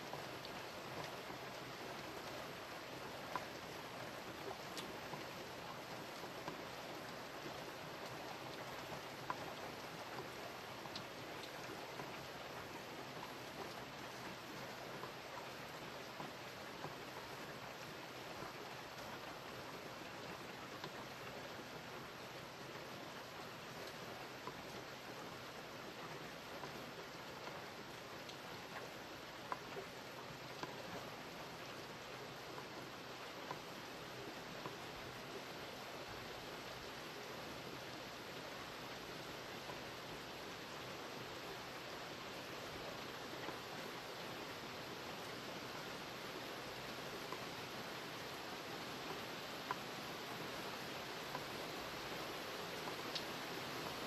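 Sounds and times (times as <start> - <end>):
raindrops ticking: 0.0 - 37.0, 37.6 - 54.0
steady rain hiss: 0.0 - 54.0
single raindrops ticking: 46.7 - 54.0.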